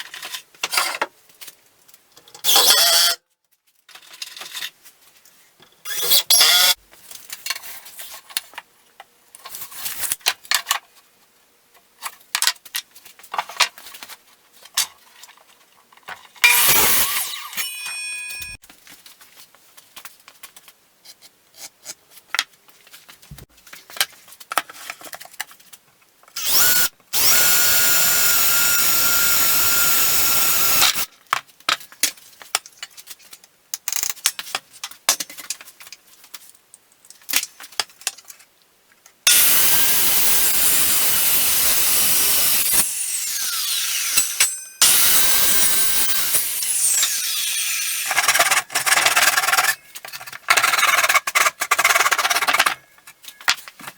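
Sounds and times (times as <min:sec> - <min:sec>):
power tool cutting wood: 0:16.4 - 0:18.6, 0:26.4 - 0:31.1, 0:39.3 - 0:49.8.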